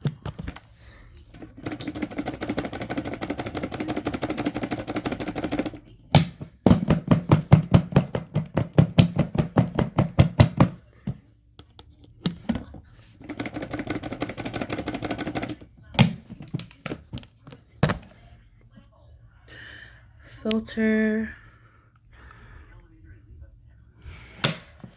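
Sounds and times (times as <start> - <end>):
hard knocks on plastic cup: 3.3 - 11.2.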